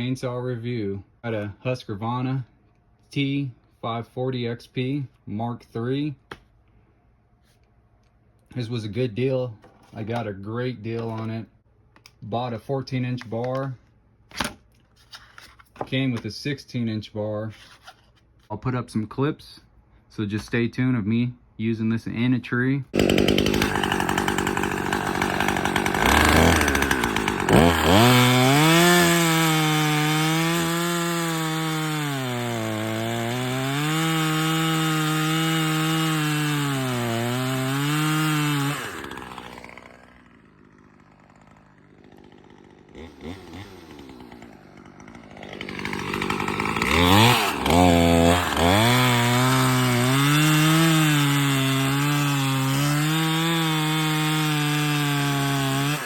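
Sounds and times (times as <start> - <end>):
chainsaw cutting wood: 22.9 - 56.0.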